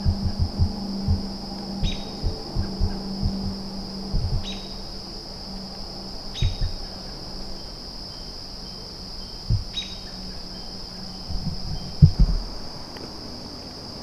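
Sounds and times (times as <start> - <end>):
soft low thumps: 0.0 - 4.9, 6.3 - 6.9, 9.4 - 9.8, 11.3 - 12.7
insects trilling: 0.0 - 14.0.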